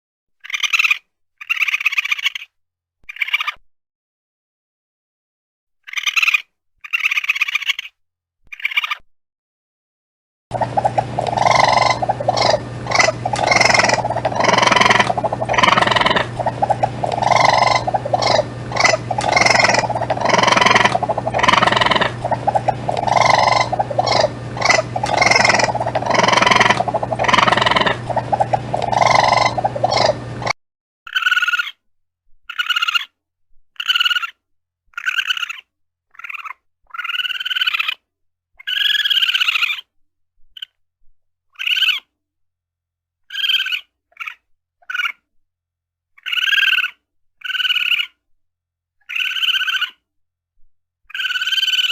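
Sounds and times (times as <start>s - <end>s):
low hum: 10.5s - 30.5s
raccoon calls: 10.5s - 30.5s.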